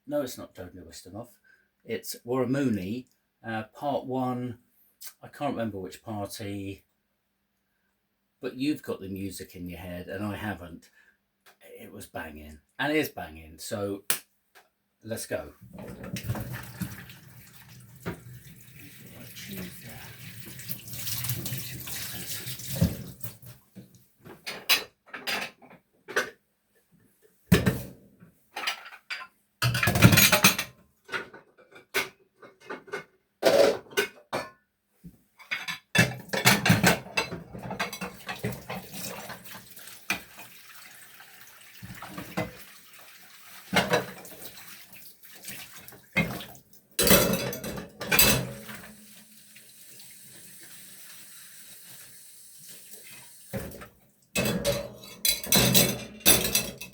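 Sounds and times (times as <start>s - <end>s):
dishes clattering in a sink: 15.7s - 23.4s, 24.3s - 26.4s, 27.5s - 28.0s, 28.6s - 34.6s, 35.4s - 40.6s, 41.8s - 42.7s, 43.7s - 44.7s, 45.4s - 49.0s, 53.6s - 56.9s
tap water running: 15.7s - 23.6s, 36.9s - 56.9s.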